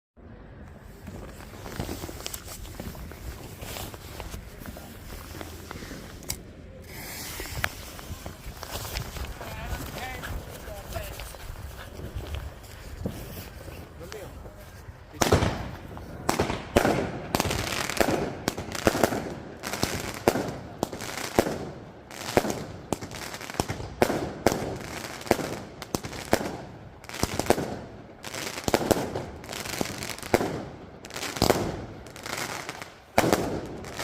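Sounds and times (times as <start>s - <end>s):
firework crackling: 0.9s - 34.0s
firework bangs: 6.9s - 34.0s.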